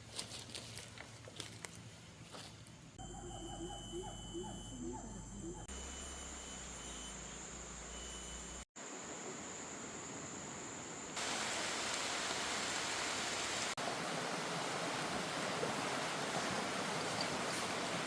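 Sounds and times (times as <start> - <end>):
river water rushing: 11.2 - 18.0.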